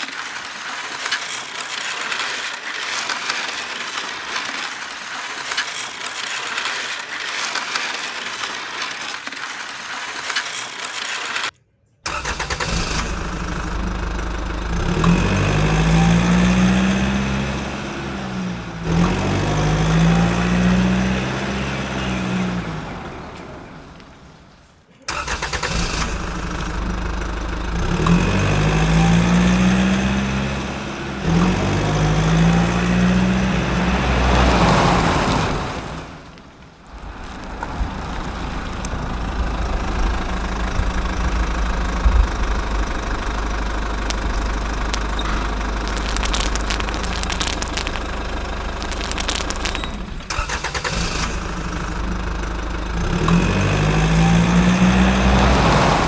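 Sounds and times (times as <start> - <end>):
diesel engine revving: 12.1 - 24.5, 25.1 - 56.0.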